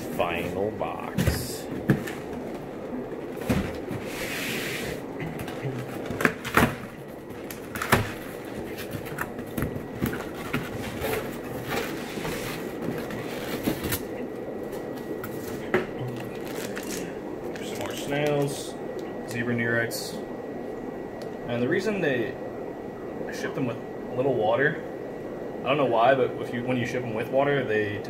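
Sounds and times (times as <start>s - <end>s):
steady low hum: 0.0s - 28.0s
packaging rustle: 16.2s - 18.1s.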